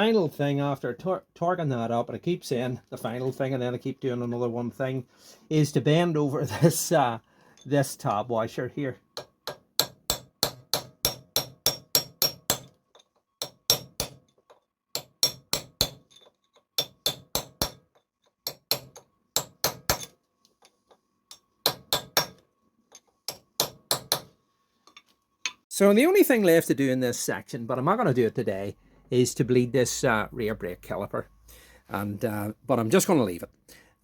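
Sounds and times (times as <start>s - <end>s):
hammer tapping on metal: 9.2s - 12.7s, 13.4s - 14.3s, 15.0s - 16.0s, 16.8s - 20.1s, 21.3s - 24.3s.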